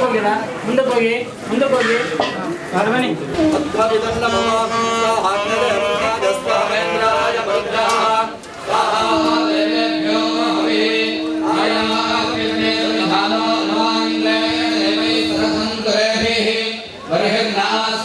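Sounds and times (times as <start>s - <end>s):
steady held tone: 3.4s - 16.9s
men chanting in group: 3.4s - 18.0s.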